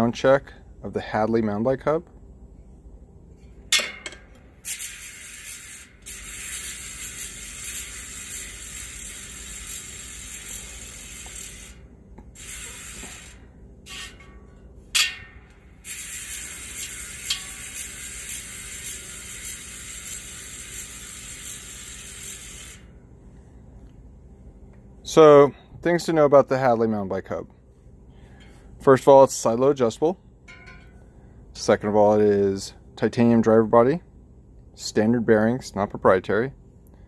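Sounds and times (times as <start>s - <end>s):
bike hub ratchet buzz: 4.6s - 14.2s, 14.9s - 23.0s.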